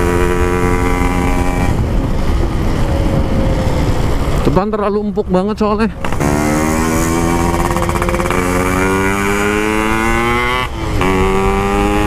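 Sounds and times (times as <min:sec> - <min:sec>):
motorcycle engine accelerating: 0:00.0 - 0:04.4, 0:06.0 - 0:12.0.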